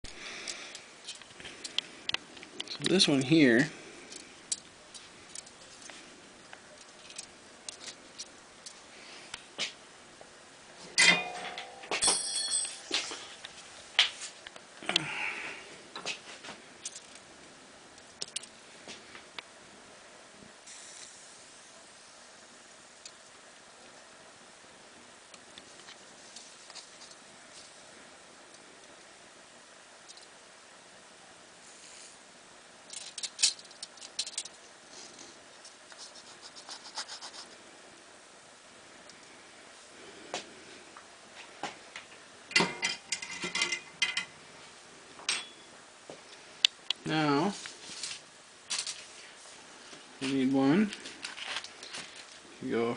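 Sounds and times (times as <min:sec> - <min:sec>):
wire scratching and clicking: 0:00.1 - 0:03.2, 0:04.1 - 0:09.8, 0:16.8 - 0:17.3, 0:18.0 - 0:18.6, 0:32.9 - 0:37.6
ringing metallic clinks: 0:11.0 - 0:13.1
soft rustle: 0:25.6 - 0:28.0, 0:47.4 - 0:52.6.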